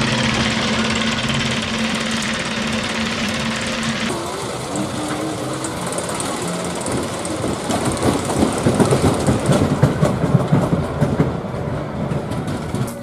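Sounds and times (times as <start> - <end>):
ride train wheels clattering on track: 0.0 - 13.0.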